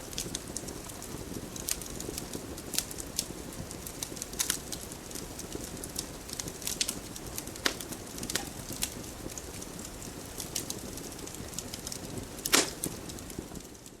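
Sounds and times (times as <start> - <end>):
fire crackles and pops: 0.0 - 14.0
rush of flames: 0.0 - 14.0.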